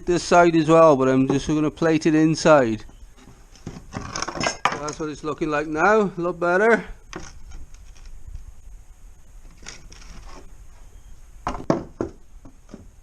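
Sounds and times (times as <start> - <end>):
sharp knocks of objects: 11.5 - 12.9.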